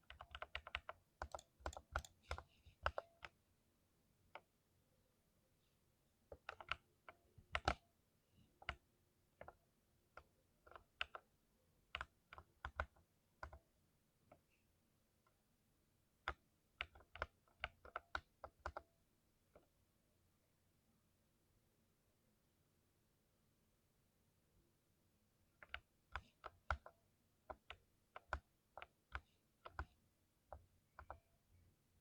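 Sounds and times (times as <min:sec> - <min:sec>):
mechanical keyboard typing: 0:00.0 - 0:03.4, 0:06.4 - 0:06.9, 0:07.5 - 0:07.8, 0:11.9 - 0:13.6, 0:16.3 - 0:18.8, 0:27.5 - 0:30.0.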